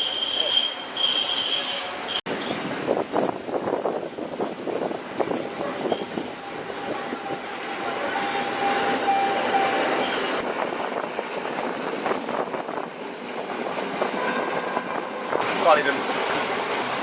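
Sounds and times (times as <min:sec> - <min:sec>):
train wheel squeal: 0:00.0 - 0:10.4
train rattling rumble: 0:00.0 - 0:17.0.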